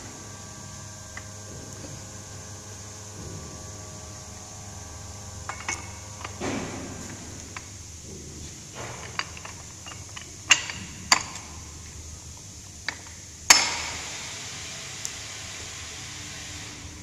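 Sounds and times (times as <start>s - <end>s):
tools knocking and clacking: 5.5s - 11.6s.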